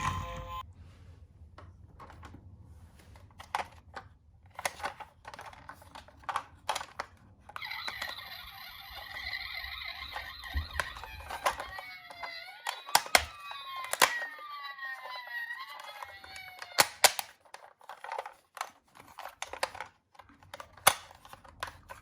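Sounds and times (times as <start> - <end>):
steady high tone: 0.0 - 0.6
toy cars clicking on plastic track: 4.6 - 22.0.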